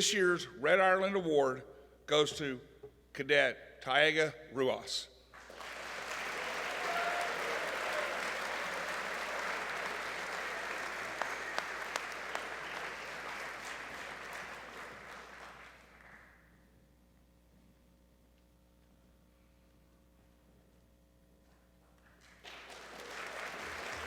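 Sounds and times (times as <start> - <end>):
audience applauding: 5.4 - 16.4, 22.2 - 24.0.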